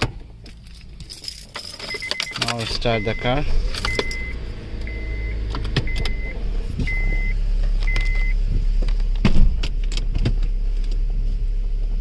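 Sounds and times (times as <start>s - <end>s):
low steady rumble: 0.0s - 12.0s
car warning chime beeping: 1.9s - 8.4s
thump: 9.2s - 9.6s.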